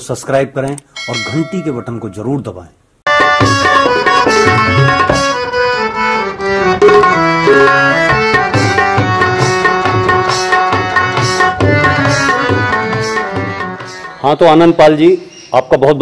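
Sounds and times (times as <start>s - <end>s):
instrumental music with drum beat: 3.1s - 5.9s, 6.5s - 14.3s.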